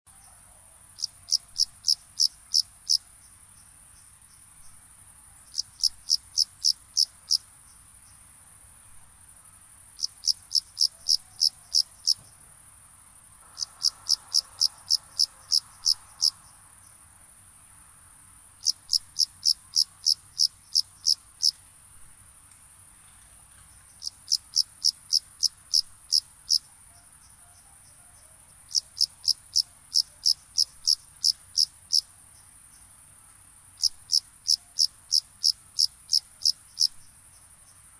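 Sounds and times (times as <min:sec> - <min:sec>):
cricket chirping: 0:00.1 - 0:37.9
steady high hiss: 0:00.2 - 0:26.7.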